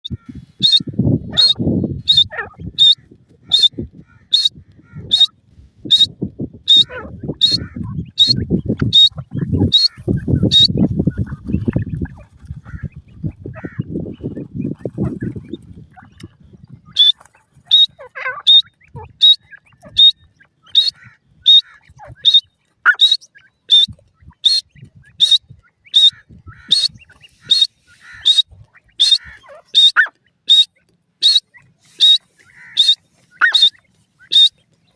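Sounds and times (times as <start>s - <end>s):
bird calling sharp high notes: 0.6s - 3.7s, 4.3s - 4.5s, 5.1s - 5.3s, 6.7s - 10.7s, 20.7s - 25.4s, 26.0s - 34.6s.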